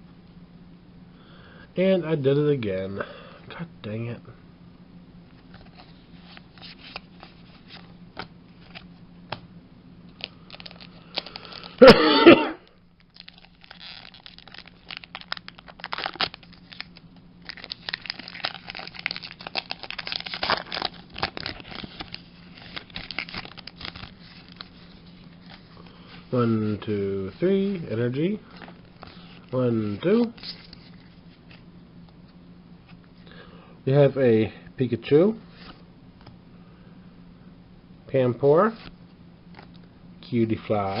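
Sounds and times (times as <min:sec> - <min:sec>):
cards clicking and rustling: 0:10.1 - 0:11.8, 0:13.2 - 0:26.2
foil pack crinkling and tearing: 0:10.1 - 0:11.9, 0:13.0 - 0:26.4.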